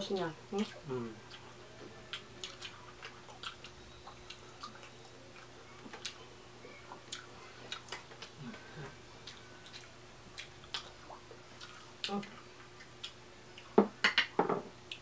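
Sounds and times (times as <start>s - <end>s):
eating clicks and mouth smacks: 0.6s - 6.2s, 6.9s - 8.4s, 9.2s - 14.3s.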